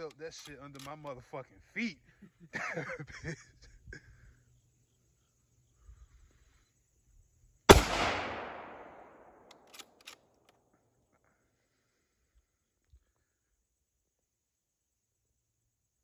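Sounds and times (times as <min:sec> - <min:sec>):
rifle bolt clicks: 0:00.0 - 0:01.0, 0:07.7 - 0:10.6
rifle shot with echo: 0:07.7 - 0:10.1.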